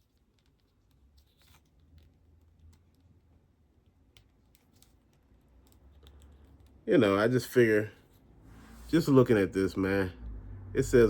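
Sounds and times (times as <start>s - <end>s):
low hum: 8.1s - 11.0s.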